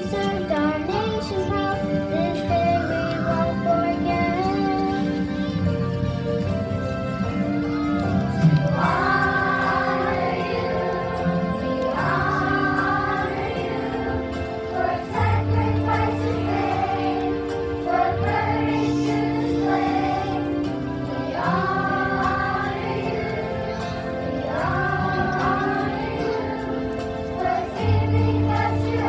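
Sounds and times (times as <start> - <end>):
choir singing: 8.4 - 29.0.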